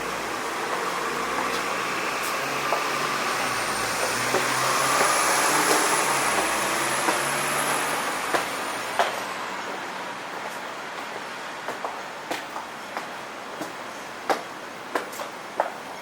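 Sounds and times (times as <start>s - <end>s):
large vehicle engine hum: 0.0s - 10.8s.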